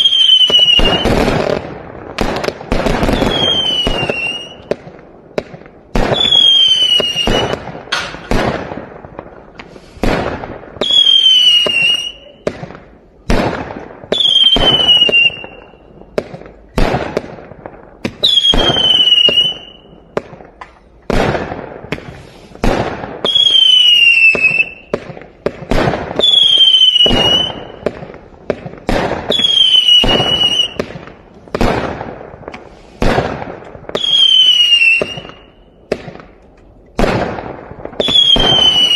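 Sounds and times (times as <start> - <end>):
whistling firework shots: 0.0 - 36.4, 37.0 - 38.9
fireworks bangs and crackles: 0.0 - 38.9.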